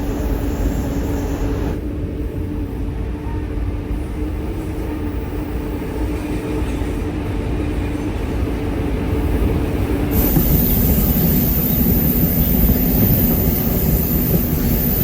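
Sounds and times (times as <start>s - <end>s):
train rumbling: 0.0s - 15.0s
thin high whine: 10.1s - 15.0s.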